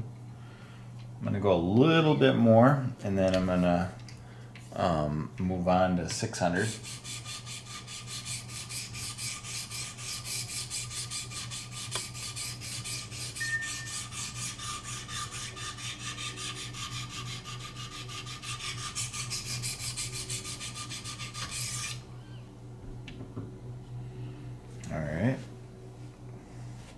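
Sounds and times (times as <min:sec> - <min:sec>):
sharpening stones rasping on knife: 0:06.8 - 0:22.0.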